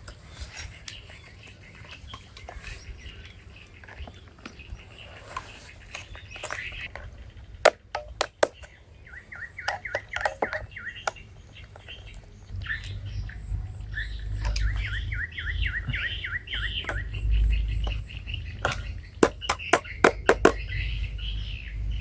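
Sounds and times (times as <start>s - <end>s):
sharp clicks and taps: 18.7s - 20.6s.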